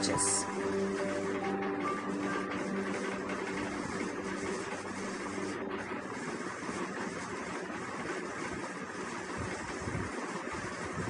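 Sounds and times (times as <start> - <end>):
soft background music: 0.0 - 7.4.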